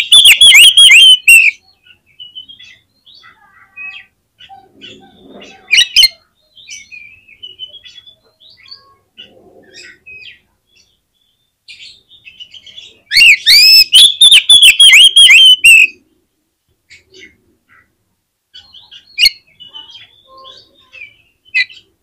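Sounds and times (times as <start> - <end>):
bird chirping and whistling: 0.0 - 1.6, 13.2 - 15.9.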